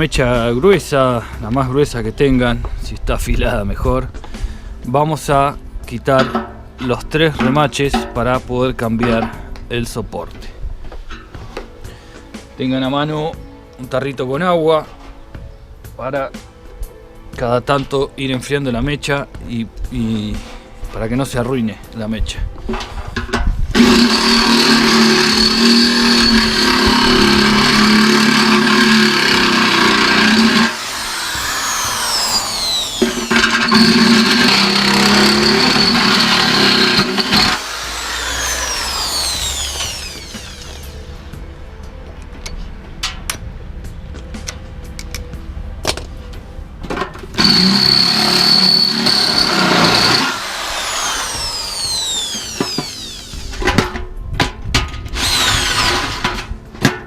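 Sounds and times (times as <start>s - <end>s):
electric drill drilling: 23.7s - 41.0s, 47.4s - 53.7s, 55.1s - 56.4s.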